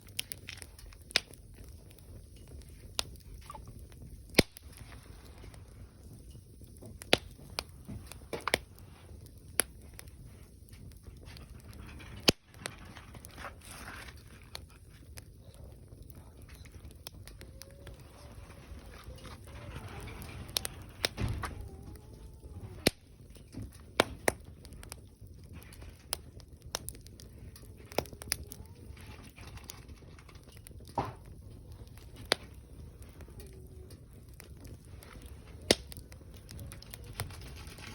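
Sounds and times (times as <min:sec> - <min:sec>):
fire crackling and popping: 0:00.0 - 0:37.9
fire low rumble: 0:00.0 - 0:37.9.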